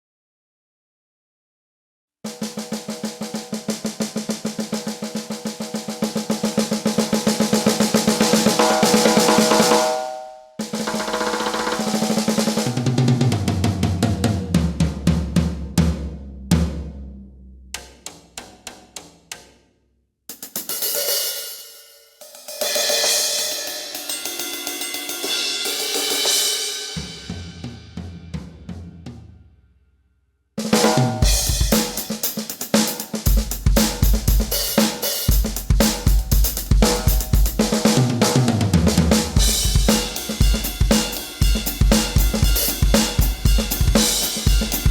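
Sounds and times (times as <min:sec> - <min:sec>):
electronic drum roll: 0:02.7 - 0:10.0, 0:10.7 - 0:17.1, 0:30.6 - 0:44.9
low drums stepping down: 0:10.9 - 0:17.4, 0:30.8 - 0:32.2, 0:33.3 - 0:44.9
full-kit hits with cymbals: 0:20.3 - 0:28.1, 0:30.8 - 0:37.9, 0:39.3 - 0:44.9.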